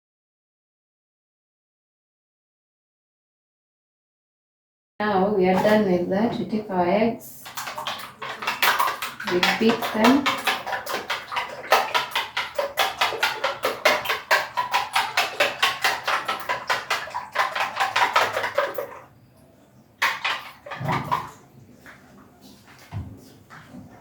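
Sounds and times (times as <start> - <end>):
whisk beating eggs in a bowl: 7.4 - 19.1.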